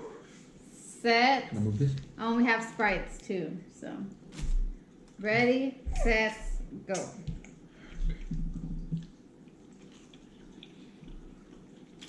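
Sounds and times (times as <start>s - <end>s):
low hummed voice: 1.5s - 2.0s
chewing with wet mouth clicks: 7.4s - 12.0s.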